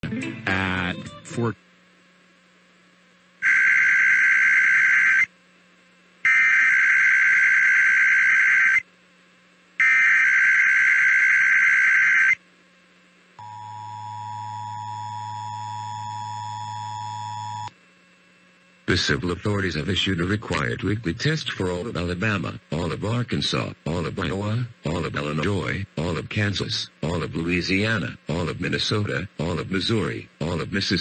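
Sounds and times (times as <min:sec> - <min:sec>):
screechy data bursts: 0:03.4 - 0:05.3, 0:06.3 - 0:08.8, 0:09.8 - 0:12.4.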